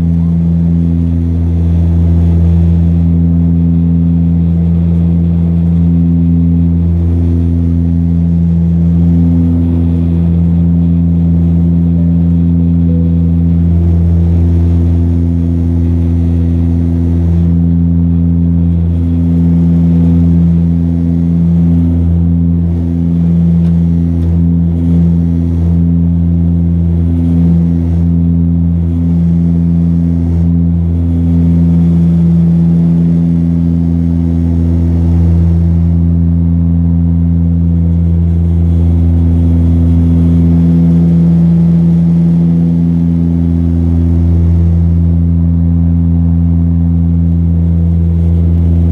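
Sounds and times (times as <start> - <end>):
turboprop engines droning: 0.0 - 48.9.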